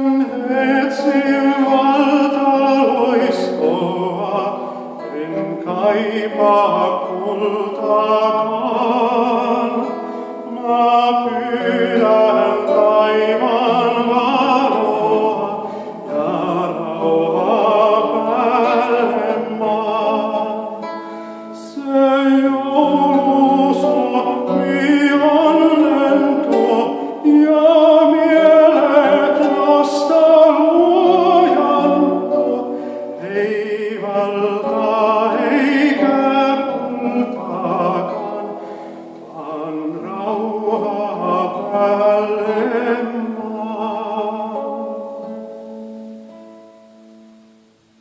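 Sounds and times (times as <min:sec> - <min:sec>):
group singing carol in harmony: 0:00.0 - 0:45.5.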